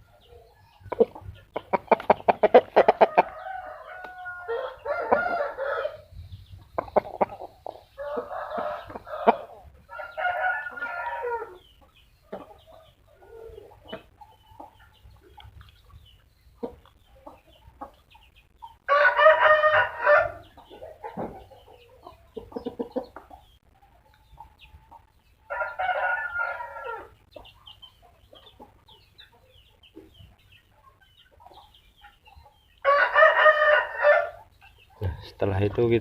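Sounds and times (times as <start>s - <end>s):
rooster crowing: 2.8s - 6.1s, 8.0s - 11.6s, 18.9s - 20.4s, 25.5s - 27.1s, 32.8s - 34.4s.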